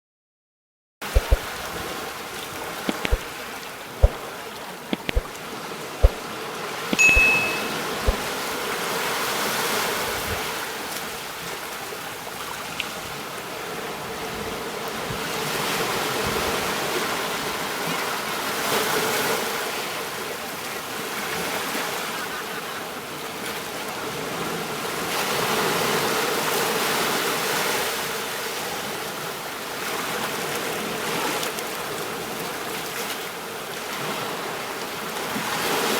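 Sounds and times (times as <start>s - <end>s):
sharp knocks: 1.2s - 1.4s, 2.9s - 3.2s
brief high chirp: 7.0s - 8.2s.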